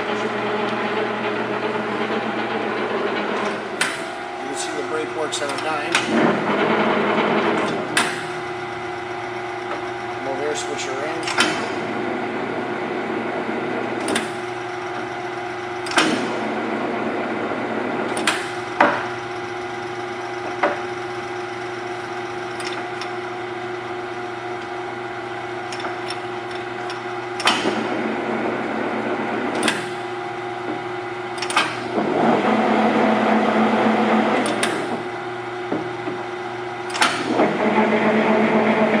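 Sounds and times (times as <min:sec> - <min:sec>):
lathe gearing humming: 0:00.0 - 0:39.0
lever clacks: 0:11.2 - 0:11.8, 0:14.0 - 0:15.1, 0:15.8 - 0:16.4, 0:22.5 - 0:23.2, 0:29.5 - 0:30.0, 0:31.4 - 0:31.9, 0:34.4 - 0:35.0, 0:36.8 - 0:37.6.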